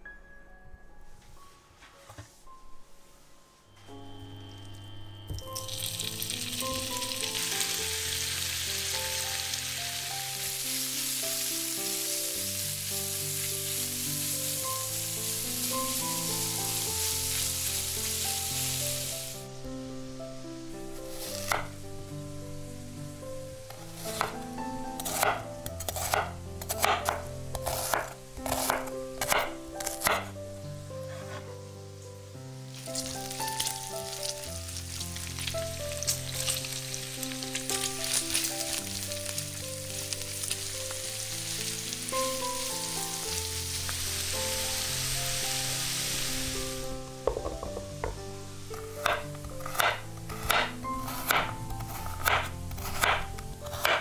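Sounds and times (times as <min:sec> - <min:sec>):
background music with held notes: 0:00.0 - 0:54.0
food sizzling in a hot pan: 0:03.9 - 0:54.0
knife chopping on cutting board: 0:21.4 - 0:21.7, 0:23.7 - 0:24.4, 0:25.0 - 0:30.3, 0:49.0 - 0:54.0.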